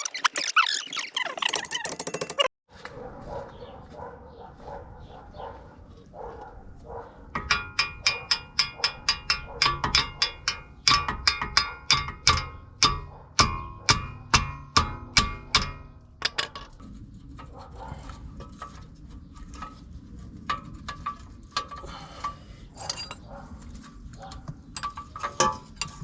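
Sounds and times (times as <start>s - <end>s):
hammer striking steel parts: 1.4s - 2.5s, 7.4s - 16.7s.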